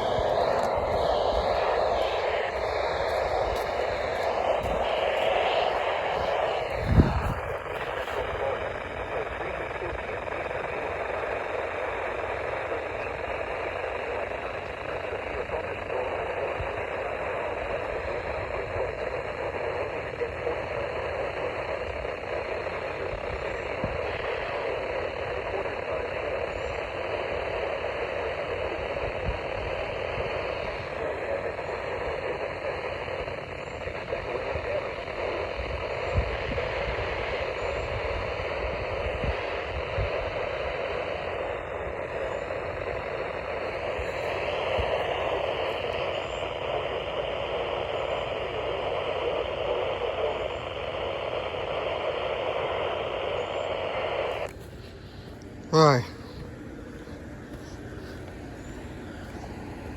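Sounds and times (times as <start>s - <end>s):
radio static hiss: 0.0s - 59.9s.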